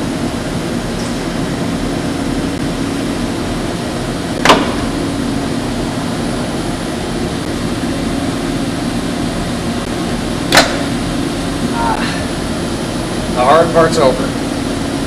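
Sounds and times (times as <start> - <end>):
machine hum: 0.0 - 15.0
sharp knock: 4.4 - 4.9.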